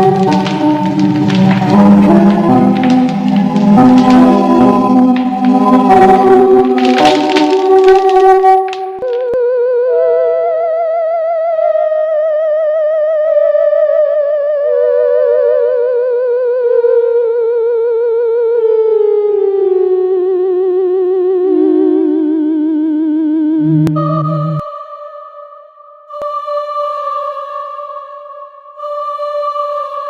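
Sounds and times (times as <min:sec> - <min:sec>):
wavering theremin-style tone: 0:09.1 - 0:18.7, 0:19.8 - 0:25.5.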